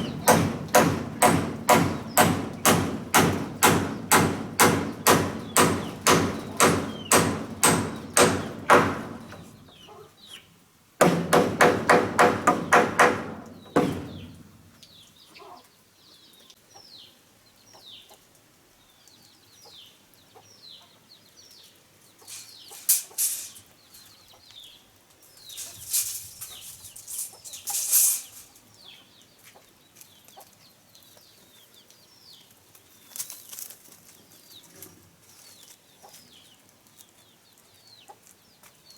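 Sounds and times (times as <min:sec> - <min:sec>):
chickens clucking: 0:00.0 - 0:00.7, 0:04.8 - 0:10.5, 0:13.8 - 0:15.7, 0:22.0 - 0:24.6, 0:25.4 - 0:30.7
rapid regular blows: 0:00.0 - 0:09.6, 0:25.5 - 0:28.6
small birds chirping: 0:00.0 - 0:10.6, 0:12.3 - 0:38.9.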